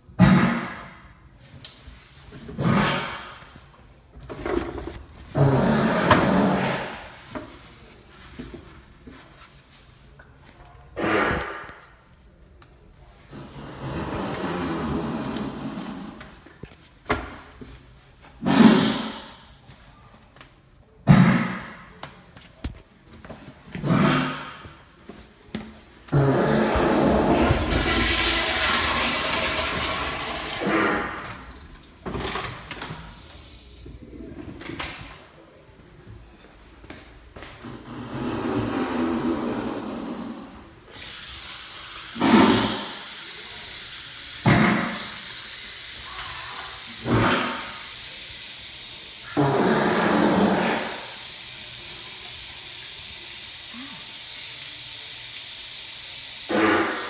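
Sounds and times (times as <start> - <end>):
loud sudden bathroom sound: 0.0 - 1.3, 2.4 - 3.7, 5.3 - 7.4, 13.3 - 16.4, 18.4 - 19.6, 21.0 - 22.0, 26.1 - 33.8, 37.6 - 57.0
toilet flushing: 13.3 - 16.4, 18.4 - 19.5, 26.1 - 34.0, 37.6 - 57.0.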